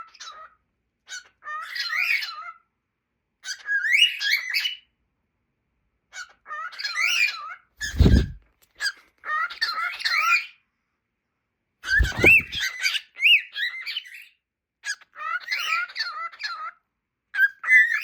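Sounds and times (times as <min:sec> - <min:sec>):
loud thump: 0:07.8 - 0:08.4, 0:12.0 - 0:12.6
short bird chirps: 0:11.9 - 0:12.6.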